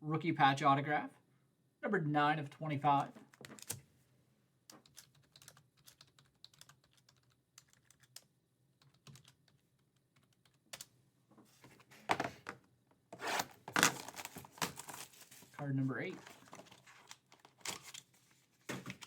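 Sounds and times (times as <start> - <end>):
cards and plastic holders handled: 3.0 - 3.8, 10.7 - 19.0.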